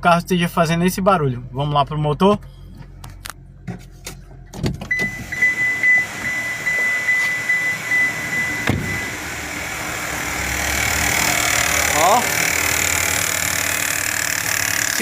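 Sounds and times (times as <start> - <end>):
car engine running: 0.0 - 15.0
car door opening: 3.7 - 9.3
car door shutting: 3.7 - 9.3
high warning chime: 4.9 - 9.3.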